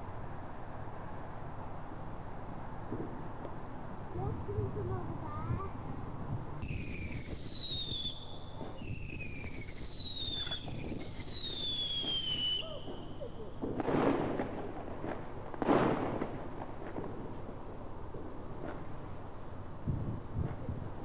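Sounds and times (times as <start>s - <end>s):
firework bangs: 2.8s - 21.0s
firework whistles falling in pitch: 6.6s - 16.4s.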